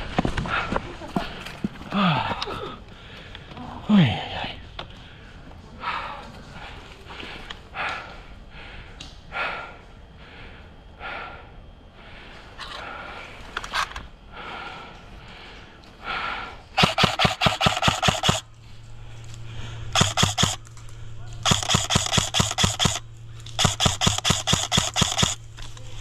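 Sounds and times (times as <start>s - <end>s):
heavy breathing: 0.3s - 26.0s
airsoft rifle bursts: 16.8s - 18.5s, 19.9s - 20.7s, 21.4s - 26.0s.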